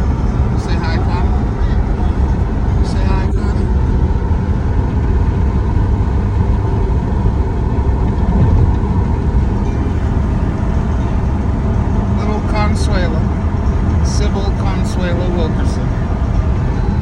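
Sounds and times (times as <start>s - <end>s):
low rumble of moving vehicle: 0.0s - 17.0s.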